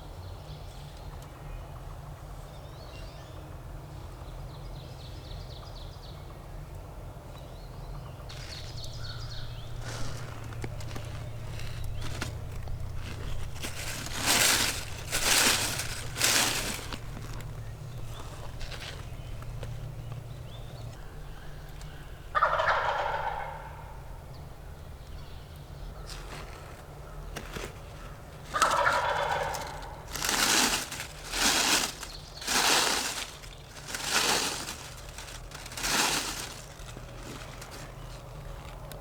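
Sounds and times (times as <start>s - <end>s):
wild turkey gobbling: 21.9s - 24.0s, 28.6s - 30.1s.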